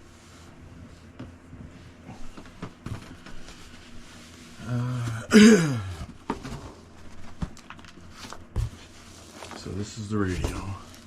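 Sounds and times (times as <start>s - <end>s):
person humming: 4.6s - 6.0s
person groaning: 4.6s - 6.1s.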